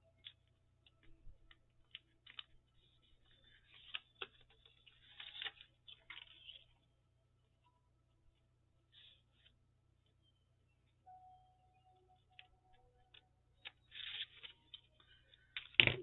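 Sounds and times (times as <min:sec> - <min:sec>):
paper crinkling by hand: 0:00.2 - 0:06.8, 0:12.4 - 0:16.0.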